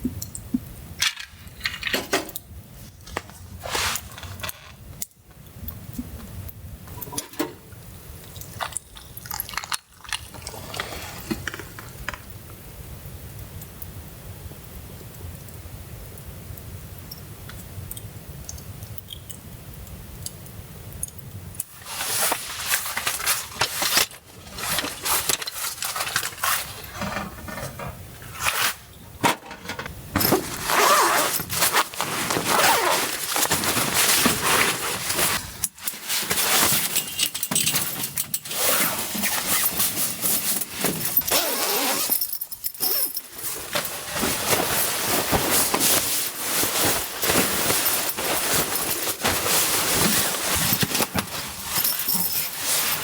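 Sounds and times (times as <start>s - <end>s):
gear rustling and clinking: 21.6s - 53.0s.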